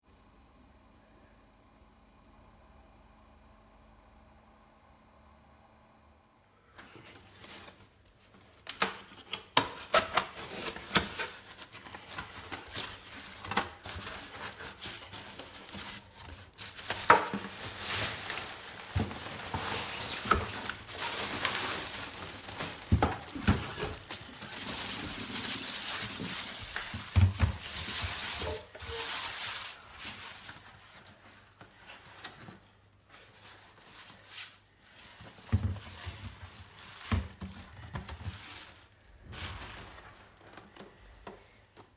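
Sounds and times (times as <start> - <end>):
rustling: 10.4 - 41.6.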